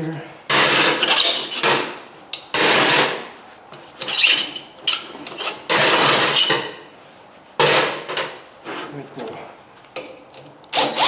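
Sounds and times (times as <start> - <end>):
metal scraping and rasping: 4.0 - 6.6.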